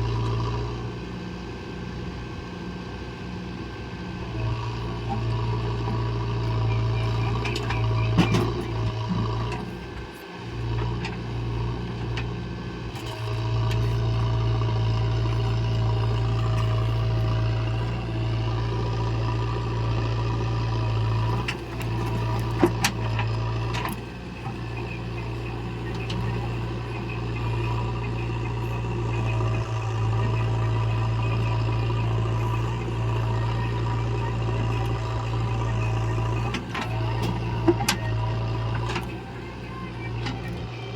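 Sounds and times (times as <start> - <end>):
diesel engine running: 0.0 - 40.9
sharp engine knocks: 7.0 - 9.7.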